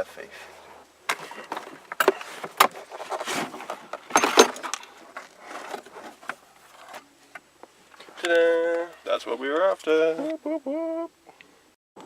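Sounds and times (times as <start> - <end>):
scraping and rustling: 1.1 - 8.2
clicks and knocks of car parts: 3.8 - 7.5.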